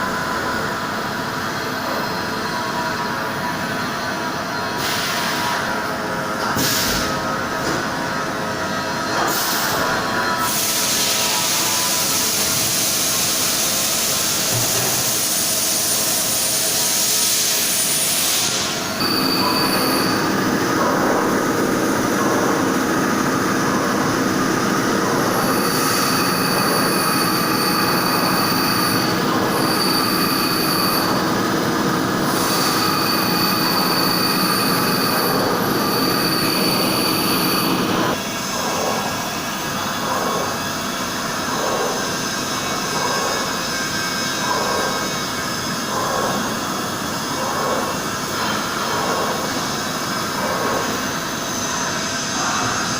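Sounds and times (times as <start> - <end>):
milling machine cutting: 19.0 - 39.1.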